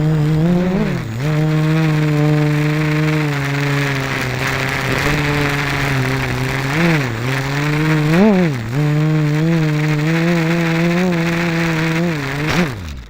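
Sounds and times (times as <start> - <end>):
quadcopter propellers buzzing: 0.0 - 13.0.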